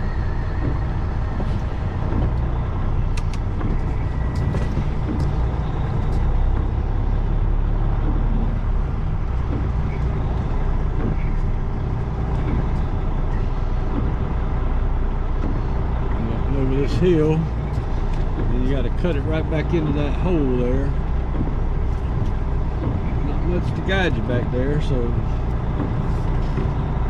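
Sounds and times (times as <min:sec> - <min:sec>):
diesel truck engine rumbling: 0:00.0 - 0:27.0.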